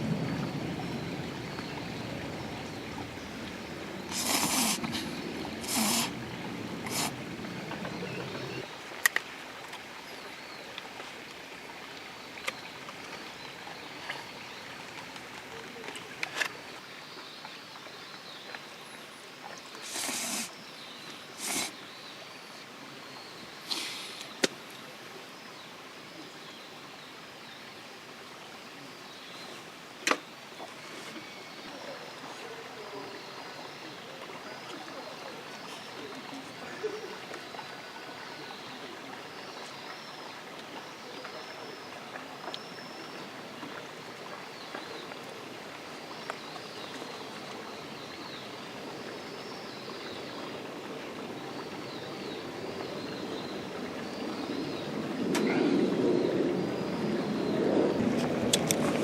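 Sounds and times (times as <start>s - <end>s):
small birds chirping: 0.0s - 8.7s, 17.1s - 24.9s
steady forest hiss: 0.0s - 59.0s
rustles: 3.0s - 8.7s, 19.7s - 21.8s.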